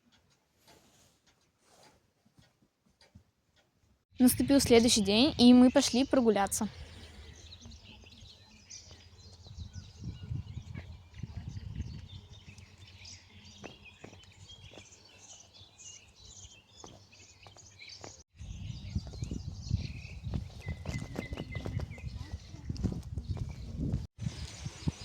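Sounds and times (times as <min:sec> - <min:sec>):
wind rumble on microphone: 0:04.2 - 0:14.8, 0:18.4 - 0:25.0
small birds chirping: 0:04.2 - 0:25.0.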